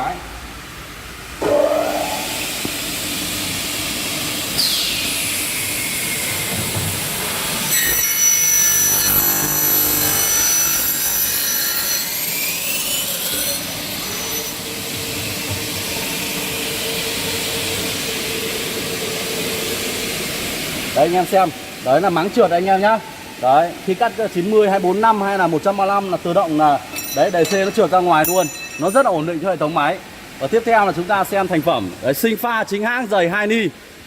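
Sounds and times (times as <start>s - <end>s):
saw blade cutting aluminium screech: 7.7s - 14.6s.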